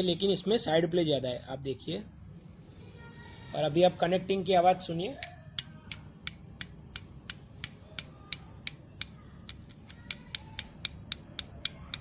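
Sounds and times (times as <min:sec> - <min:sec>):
sharp metallic clicking: 0:05.2 - 0:12.0.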